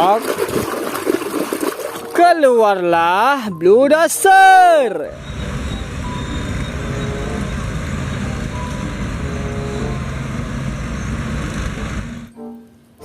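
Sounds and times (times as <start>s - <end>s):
heavy machine engine rumbling: 5.1s - 12.3s.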